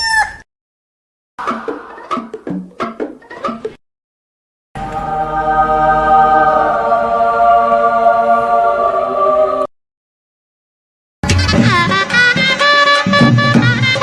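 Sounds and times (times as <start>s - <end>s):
choir-like musical chord: 4.8s - 9.7s
falling sweep in music: 4.8s - 9.7s.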